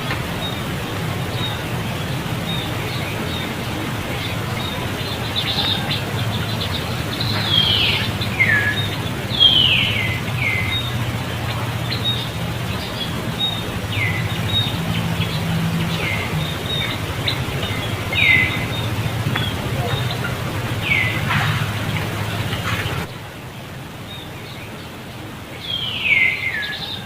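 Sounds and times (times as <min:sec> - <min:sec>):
steady low hum: 0:00.0 - 0:25.7.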